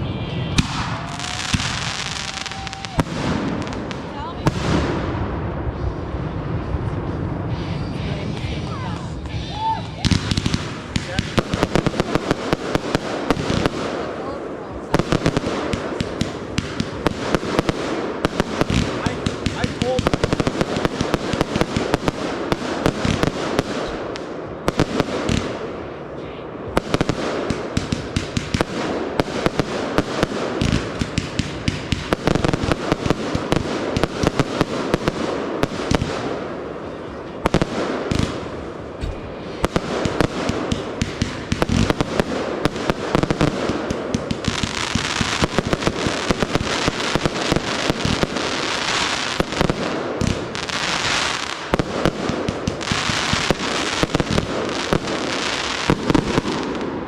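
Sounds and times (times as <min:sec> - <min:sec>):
fireworks crackling: 0:00.0 - 0:57.0
fireworks bangs and pops: 0:00.5 - 0:05.2, 0:08.3 - 0:25.9, 0:26.7 - 0:57.0.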